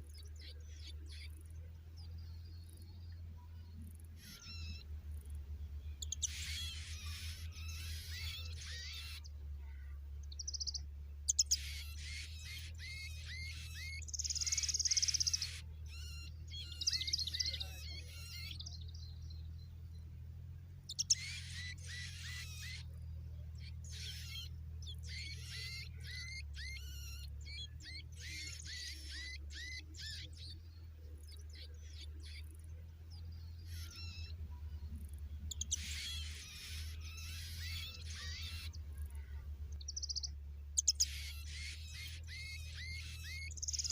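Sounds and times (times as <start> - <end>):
nestling birds chirping: 0.0 - 43.9
steady low hum: 0.0 - 43.9
buzzy trill of begging calls: 4.2 - 4.9, 6.0 - 9.8, 10.4 - 18.7, 20.9 - 22.9, 23.6 - 30.5, 33.6 - 34.4, 35.4 - 43.9.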